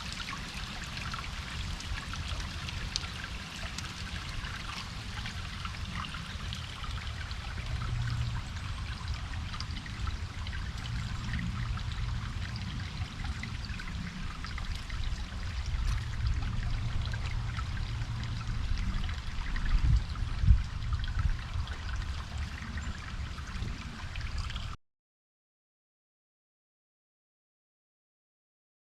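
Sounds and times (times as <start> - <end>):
stream trickling and babbling: 0.0 - 24.8
low rumble: 4.3 - 24.8.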